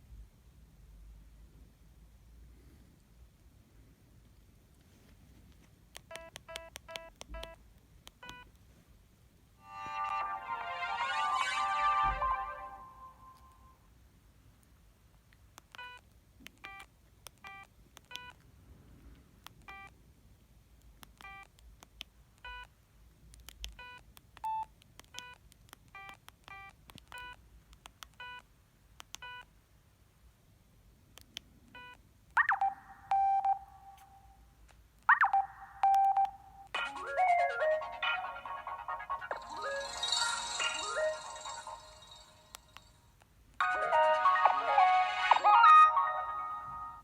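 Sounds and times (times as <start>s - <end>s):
longer loud tones: 9.6s - 13.6s
polyphonic ringtone: 9.6s - 13.6s, 35.1s - 43.0s, 43.6s - 47.0s
short phone beeps: 31.8s - 34.2s.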